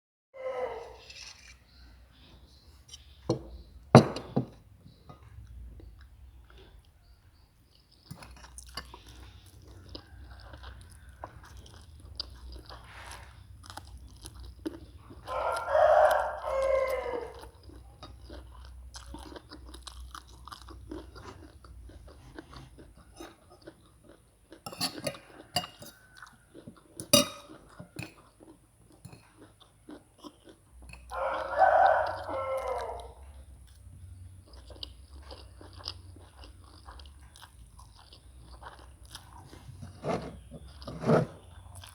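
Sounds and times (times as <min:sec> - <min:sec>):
rooster crowing: 0:00.4 - 0:01.1, 0:09.8 - 0:11.5, 0:15.2 - 0:17.6, 0:31.1 - 0:33.3
chewing and crunching noodles: 0:04.9 - 0:41.9.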